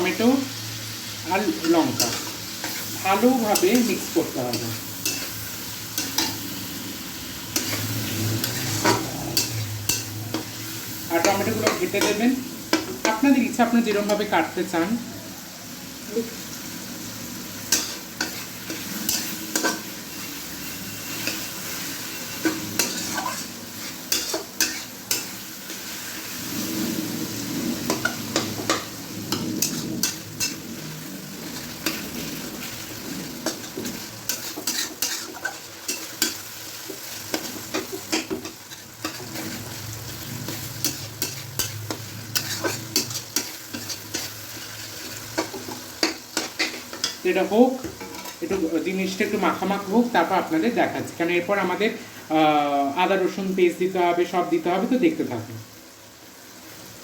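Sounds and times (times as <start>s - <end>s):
vegetables sizzling in hot oil: 0.0s - 57.0s
utensil scraping a pan: 7.5s - 13.2s, 17.7s - 48.7s.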